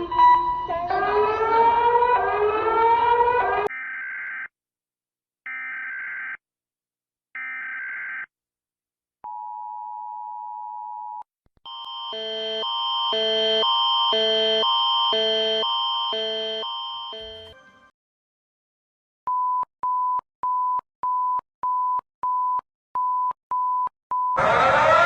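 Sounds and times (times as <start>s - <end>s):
alternating alarm tones: 11.7s - 17.6s.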